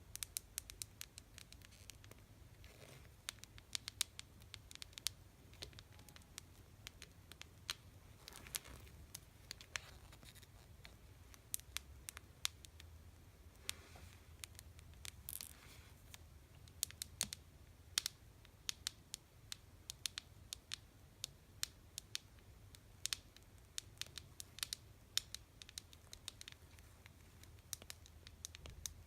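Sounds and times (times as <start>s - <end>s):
soft scratchy touches: 1.1s - 3.7s, 4.4s - 12.8s, 13.5s - 16.2s.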